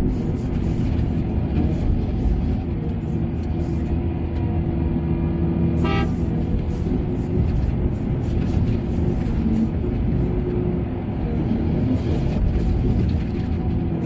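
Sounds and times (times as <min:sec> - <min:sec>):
heavy diesel machinery running: 0:00.0 - 0:14.0
short horn toot: 0:05.8 - 0:06.3.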